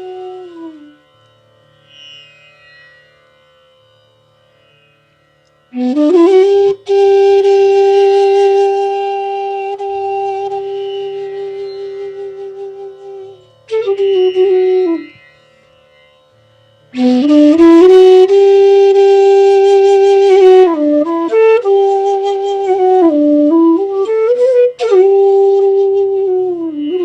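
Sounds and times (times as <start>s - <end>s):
bamboo flute solo melody: 0.0s - 1.3s, 5.7s - 15.4s, 16.9s - 27.0s.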